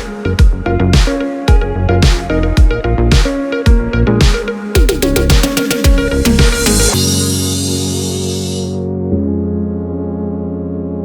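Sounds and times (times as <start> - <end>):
electronic beat with bass sweeps: 0.0 - 8.7
sustained synthesizer chords: 3.7 - 11.0.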